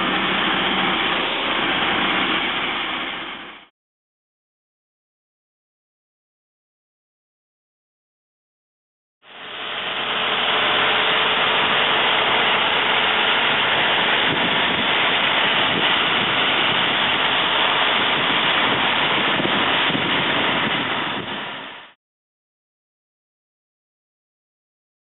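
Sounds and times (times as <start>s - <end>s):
heavy machinery engine running: 0.0s - 3.7s, 9.2s - 22.0s.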